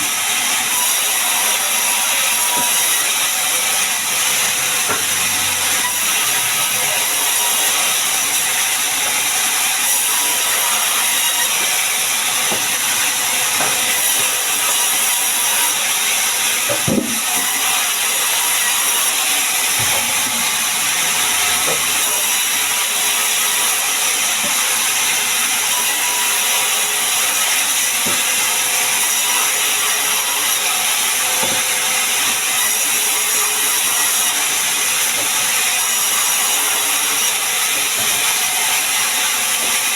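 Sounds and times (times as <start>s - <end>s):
sawmill machinery running: 0.0s - 39.9s
knocks of wood and metal: 2.3s - 3.1s, 4.8s - 5.2s, 10.9s - 15.7s, 16.6s - 17.8s, 19.7s - 20.4s, 28.0s - 28.4s, 31.4s - 31.7s.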